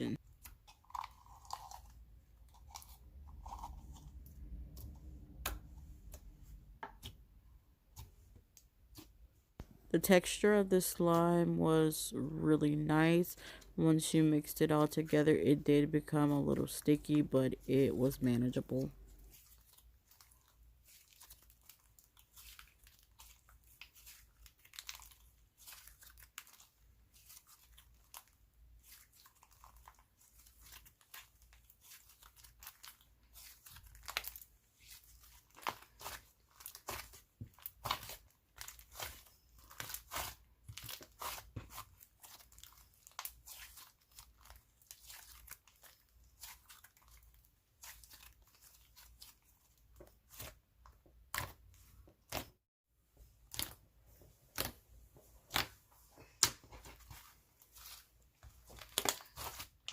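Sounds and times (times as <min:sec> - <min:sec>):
hands squishing slime: 0:18.9 - 0:52.6, 0:53.4 - 0:59.9.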